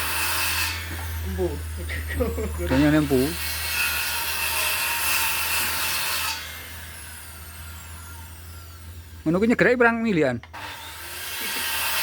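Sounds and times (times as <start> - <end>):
low hum: 0.0 - 4.4
electric planer cutting wood: 0.0 - 9.5, 10.5 - 12.0.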